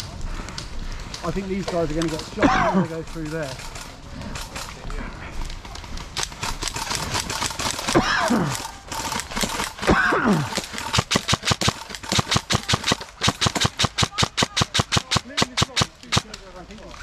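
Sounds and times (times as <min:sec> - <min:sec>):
airsoft guns firing: 0:06.2 - 0:16.4.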